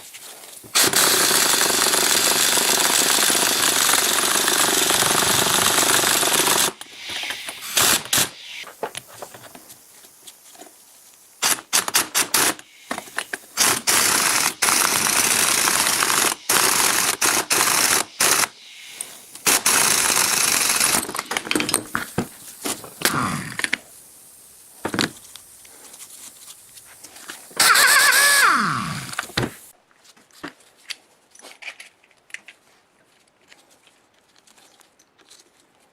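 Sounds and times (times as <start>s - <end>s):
handheld power tool whirring: 0.7s - 9.7s, 11.4s - 24.0s, 24.7s - 29.7s
power tool spinning down whine: 0.8s - 8.6s, 12.4s - 21.2s, 27.6s - 29.4s.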